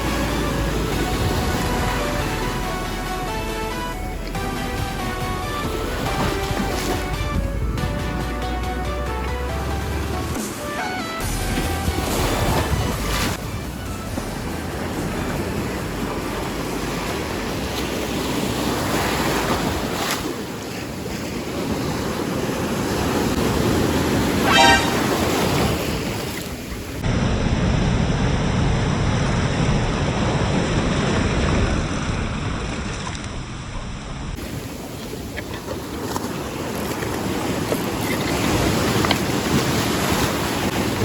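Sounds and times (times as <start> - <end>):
sea waves washing onto shore: 0.0 - 27.1, 34.4 - 41.0
short pitched toot: 24.4 - 25.6.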